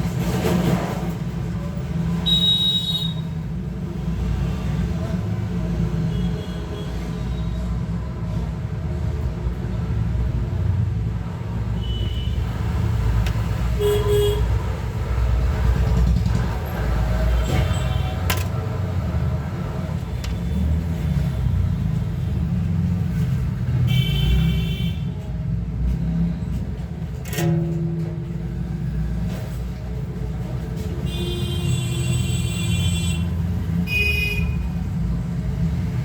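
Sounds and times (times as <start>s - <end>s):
road traffic rumble: 0.0s - 36.0s
car horn toots: 13.7s - 14.5s.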